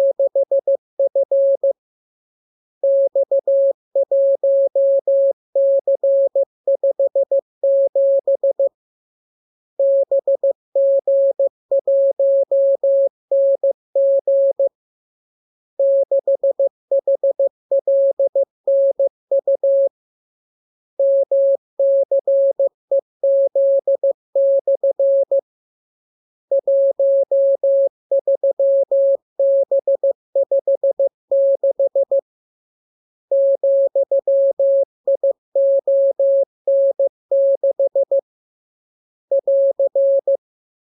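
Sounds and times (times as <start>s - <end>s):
morse code beeps: 26.5s - 32.2s, 33.3s - 38.2s, 39.3s - 40.4s.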